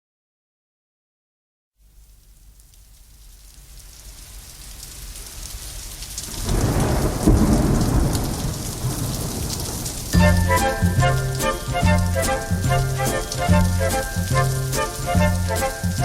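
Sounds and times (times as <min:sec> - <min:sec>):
steady rain: 0:01.8 - 0:16.0
thunder rumble: 0:06.2 - 0:16.0
music: 0:10.2 - 0:16.0.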